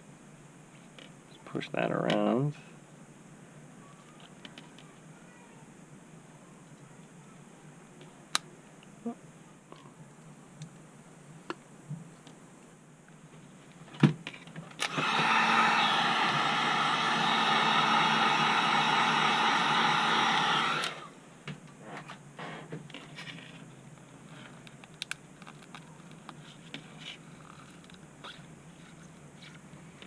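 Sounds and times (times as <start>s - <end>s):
heat gun blowing: 14.8s - 21.2s.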